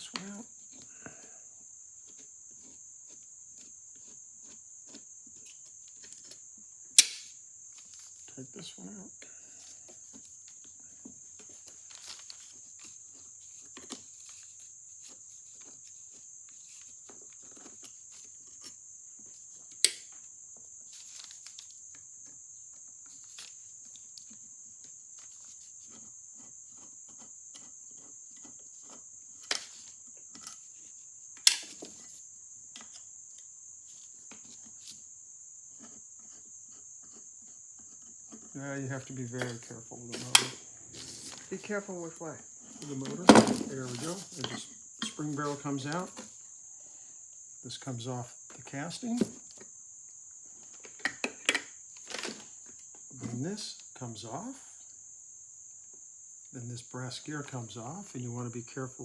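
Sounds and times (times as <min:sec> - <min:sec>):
steady high hiss: 0:00.0 - 0:02.0, 0:05.5 - 0:26.0, 0:29.1 - 0:35.7, 0:38.6 - 0:59.0
sharp clicks: 0:07.0 - 0:07.3.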